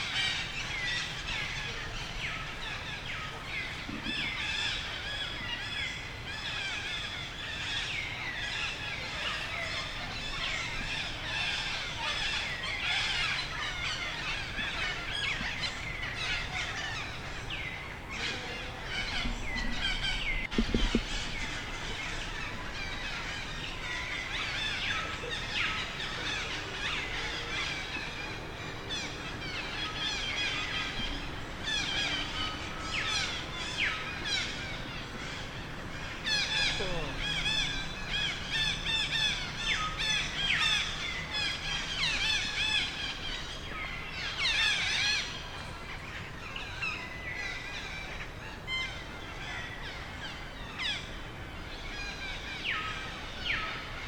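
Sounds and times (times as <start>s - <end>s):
chorus of birds chirping: 0.0s - 54.0s.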